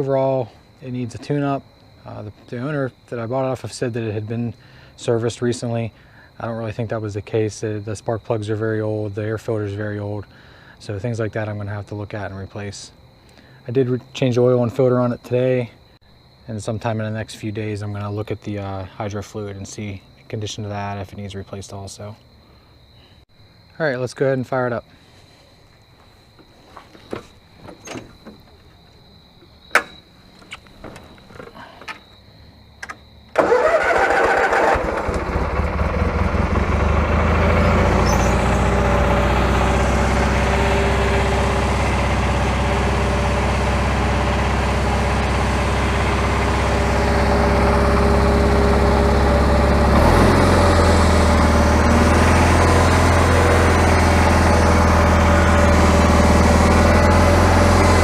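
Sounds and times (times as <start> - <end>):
sharp clicks and knocks: 29.4 - 32.0, 32.8 - 33.0
lawn tractor engine running: 29.7 - 32.0, 32.8 - 58.0.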